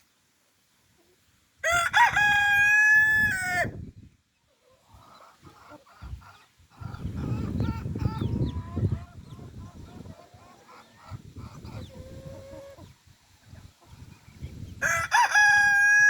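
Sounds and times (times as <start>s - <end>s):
rooster crowing: 1.6s - 3.8s, 14.8s - 16.0s.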